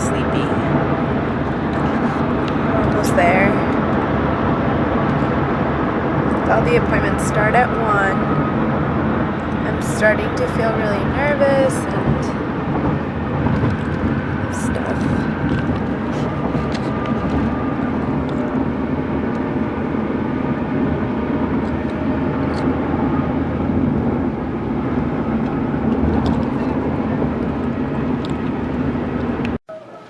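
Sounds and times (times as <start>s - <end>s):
car road and engine noise: 0.0s - 29.6s.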